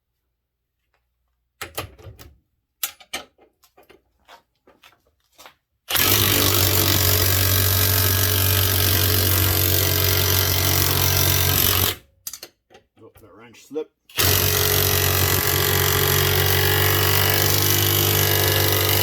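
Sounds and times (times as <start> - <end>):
impact wrench hammering: 5.9 - 12.0, 14.1 - 19.0.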